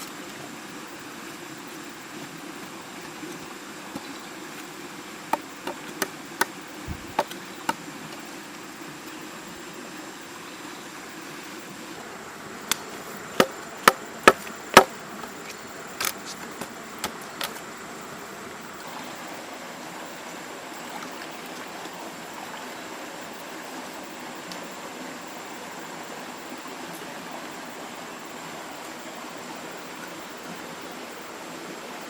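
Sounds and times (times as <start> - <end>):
steady rushing hiss: 0.0 - 32.0
sharp knocks: 6.4 - 7.4.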